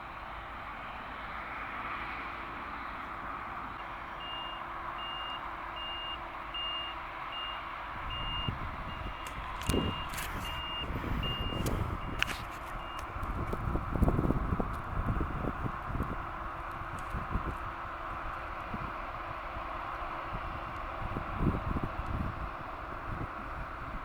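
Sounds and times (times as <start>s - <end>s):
reversing alarm beeping: 4.2s - 13.1s.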